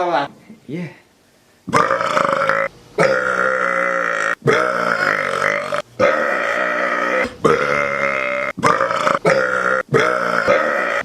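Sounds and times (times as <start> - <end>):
loud long burps: 1.7 - 11.0.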